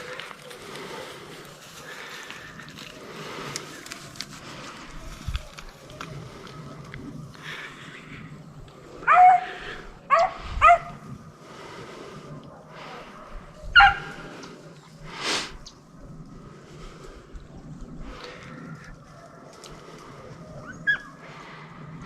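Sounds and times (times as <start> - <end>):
dogs barking: 9.0 - 11.0, 12.4 - 14.5.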